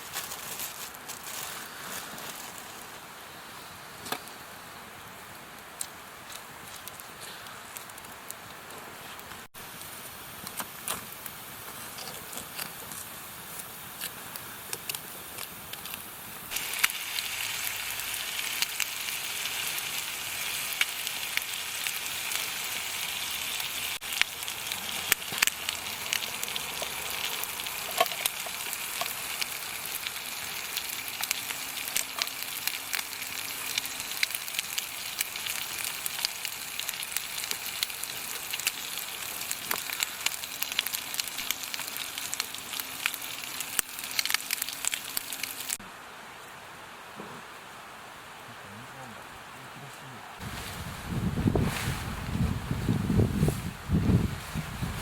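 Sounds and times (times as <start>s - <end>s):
campfire sizzling and crackling: 0.0s - 55.0s.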